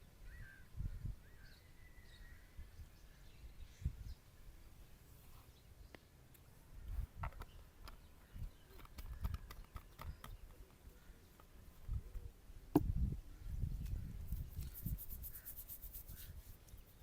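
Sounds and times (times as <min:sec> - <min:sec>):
dull pats on scalp: 0:13.9 - 0:17.0.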